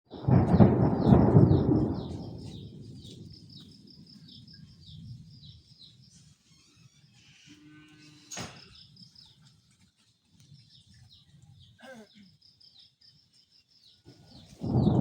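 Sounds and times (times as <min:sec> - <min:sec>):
thunder rumbling: 0:00.1 - 0:05.6, 0:14.5 - 0:15.0.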